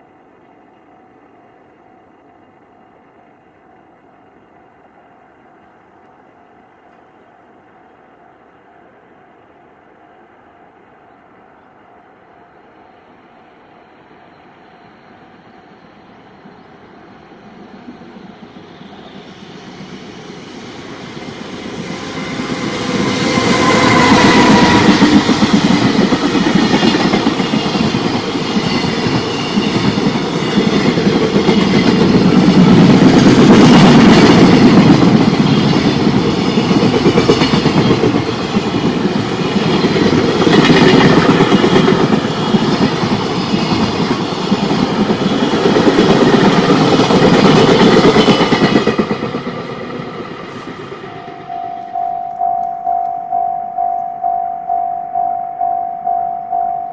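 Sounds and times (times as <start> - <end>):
train wheels rolling on rail: 0.0 - 54.0
clickety-clack of wagons: 24.3 - 50.4.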